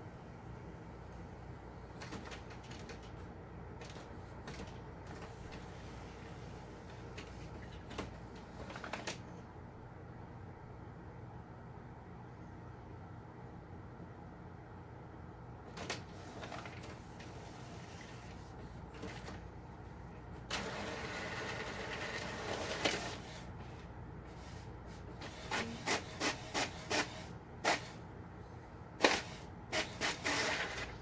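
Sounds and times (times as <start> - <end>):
printer mechanism running: 15.7 - 23.6, 24.3 - 28.0, 29.0 - 31.0.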